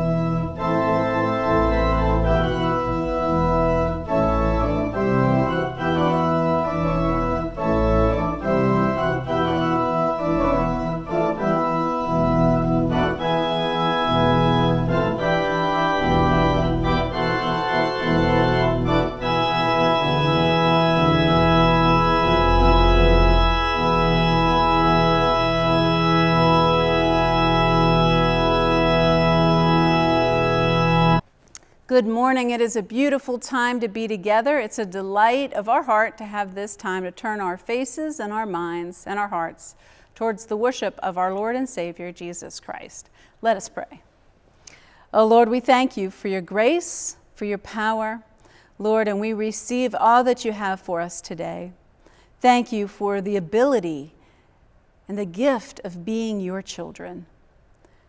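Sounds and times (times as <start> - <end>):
organ playing chords: 0.0 - 31.3.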